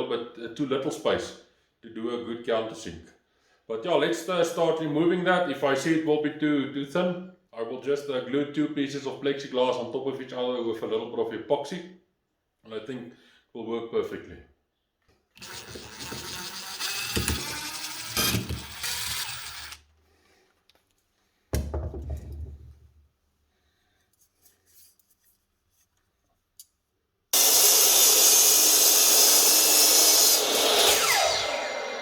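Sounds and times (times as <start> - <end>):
power tool running: 15.4 - 19.8, 27.4 - 32.0
tool scraping: 15.4 - 19.9.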